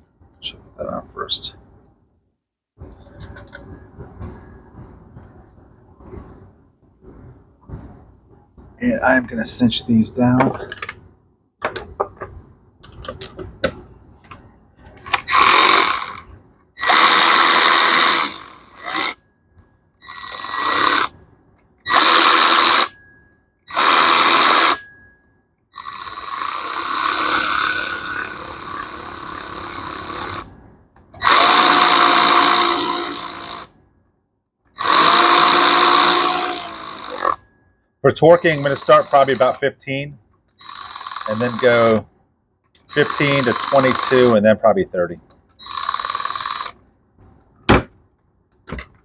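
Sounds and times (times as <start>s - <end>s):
power driver running: 15.1s - 19.2s, 20.1s - 21.1s, 21.9s - 23.0s, 23.7s - 24.9s, 25.8s - 30.6s, 31.2s - 33.7s, 34.8s - 37.4s, 38.1s - 39.7s, 40.6s - 42.0s, 42.8s - 44.4s, 45.6s - 46.8s.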